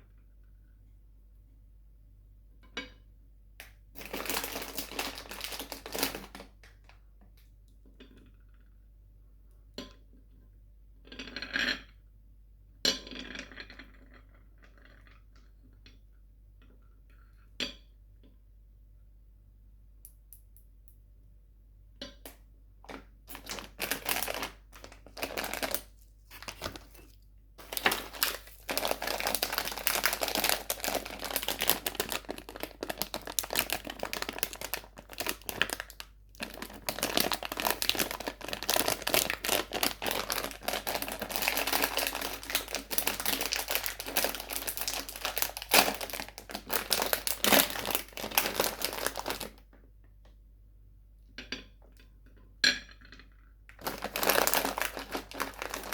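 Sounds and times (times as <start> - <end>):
plastic wrappers crinkling: 4.0 - 7.0, 22.8 - 49.6, 53.7 - 55.9.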